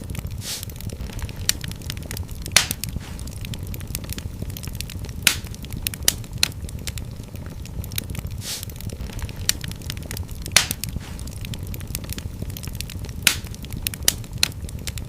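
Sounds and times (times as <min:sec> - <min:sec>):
fire crackling: 0:00.0 - 0:15.0
fire snapping: 0:00.0 - 0:15.0
low rumble of flames: 0:00.0 - 0:15.0
short hiss: 0:00.4 - 0:00.7, 0:08.4 - 0:08.7.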